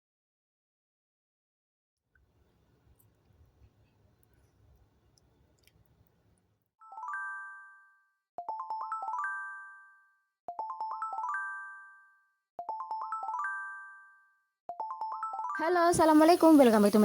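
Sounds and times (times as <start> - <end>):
chime-like intro music: 6.8 - 15.8.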